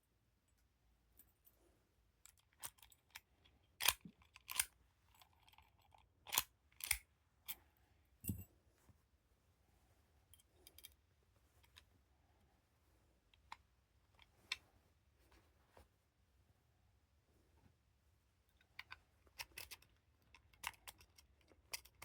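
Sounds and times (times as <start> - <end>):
metallic clicks of padlock picking: 3.8 - 4.8, 5.4 - 7.0.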